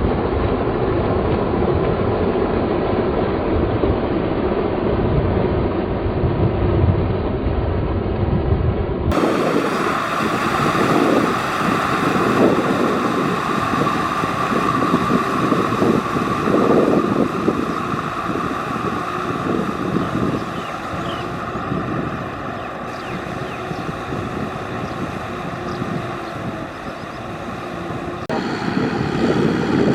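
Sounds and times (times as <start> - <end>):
tractor engine running under load: 9.1 - 29.9.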